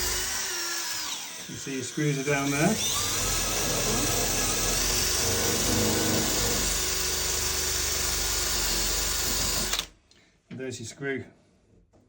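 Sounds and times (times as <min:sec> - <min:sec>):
power tool running steadily: 0:00.0 - 0:09.9.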